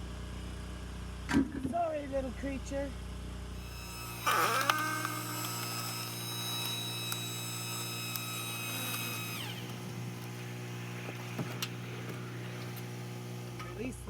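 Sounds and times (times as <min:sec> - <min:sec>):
hydraulic whine: 0:03.6 - 0:13.9
log splitter engine running: 0:03.6 - 0:14.0.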